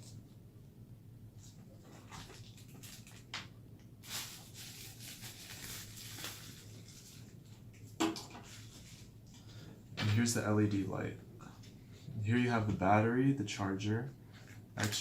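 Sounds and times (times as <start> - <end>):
packaging rustling: 1.9 - 3.3, 4.0 - 7.4.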